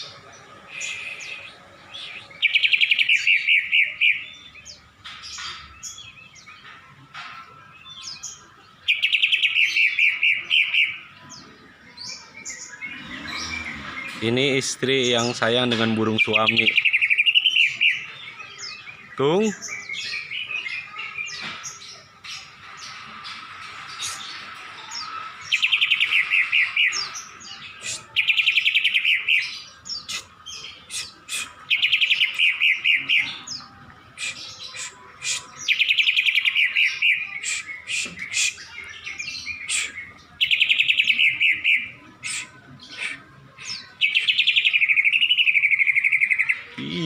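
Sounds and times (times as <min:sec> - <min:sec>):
bird chirps: 0:00.0 - 0:47.0
bird trilling: 0:12.4 - 0:15.4.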